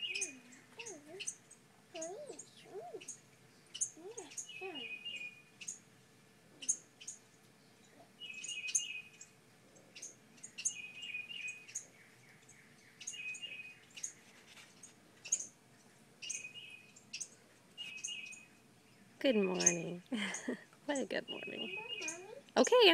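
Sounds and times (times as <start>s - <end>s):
wrens calling: 0.0s - 5.8s, 6.5s - 7.2s, 16.2s - 22.9s.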